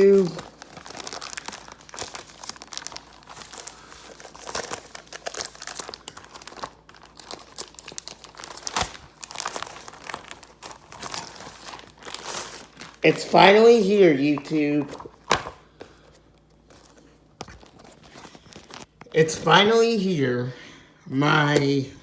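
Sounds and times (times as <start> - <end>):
packaging tearing: 0.0 - 15.6
wrapping crinkling: 0.0 - 19.1.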